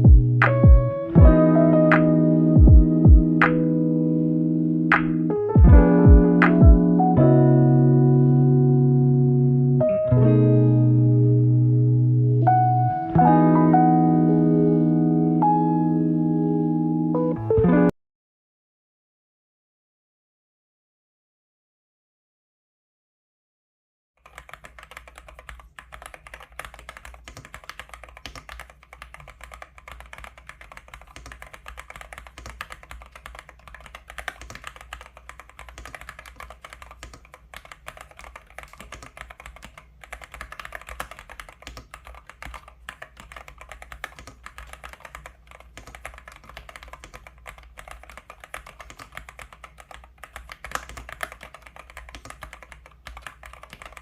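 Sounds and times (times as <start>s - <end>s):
mechanical keyboard typing: 24.2s - 54.0s.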